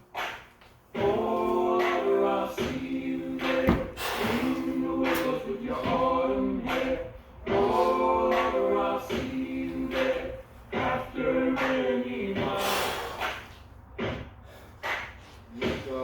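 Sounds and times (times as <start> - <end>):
a cappella group singing in harmony: 0.9 - 13.5.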